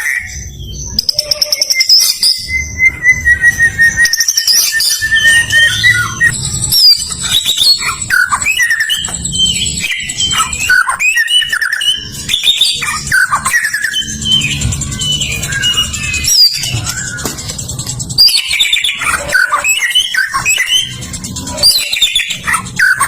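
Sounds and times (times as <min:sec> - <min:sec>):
songbirds singing: 0:00.0 - 0:23.0
low throbbing: 0:05.0 - 0:23.0.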